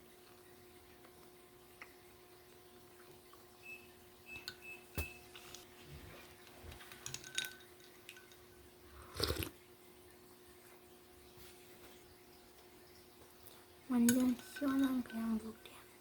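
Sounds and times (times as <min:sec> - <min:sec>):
ice clinking in glass: 0:07.0 - 0:08.6.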